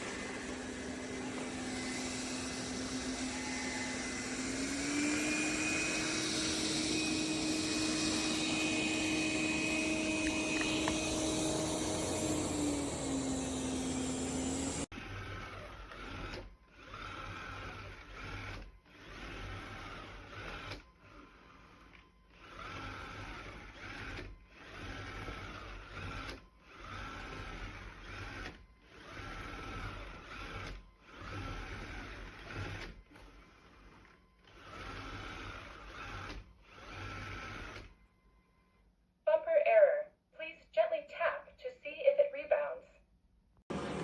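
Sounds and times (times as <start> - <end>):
robot vacuum motor whirring: 0.0 - 38.0.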